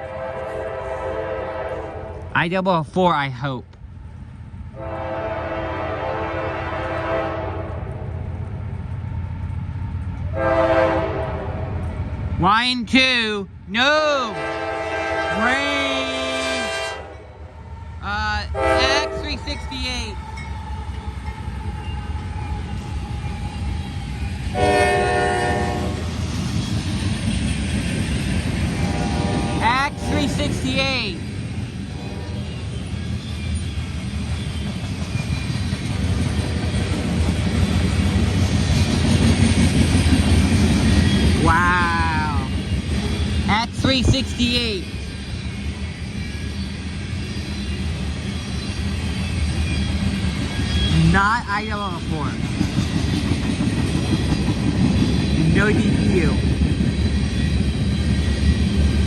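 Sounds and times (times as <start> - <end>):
locomotive air horn: 0.0 - 2.3, 4.8 - 7.8, 10.3 - 11.7, 14.3 - 17.3, 18.6 - 19.4, 24.5 - 26.0, 28.8 - 30.6, 31.9 - 32.5
freight train rumbling past: 0.0 - 59.0.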